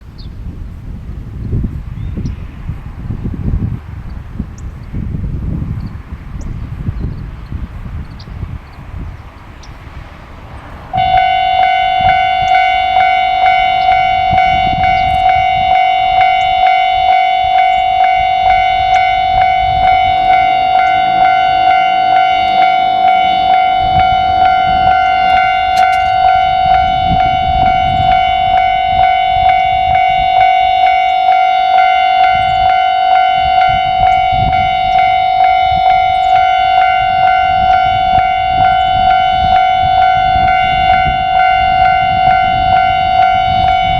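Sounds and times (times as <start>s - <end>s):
level crossing warning bell: 10.9s - 43.9s.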